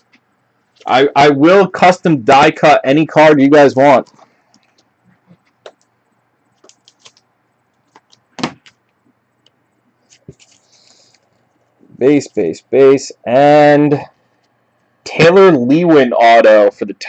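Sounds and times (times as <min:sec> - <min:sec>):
packaging rustling: 0:06.6 - 0:07.2.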